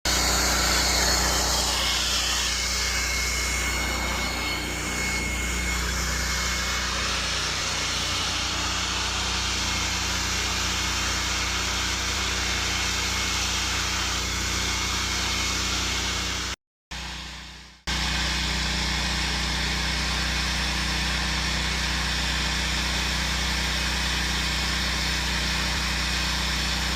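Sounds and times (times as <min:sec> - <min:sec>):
engine running steadily: 0:00.1 - 0:14.6.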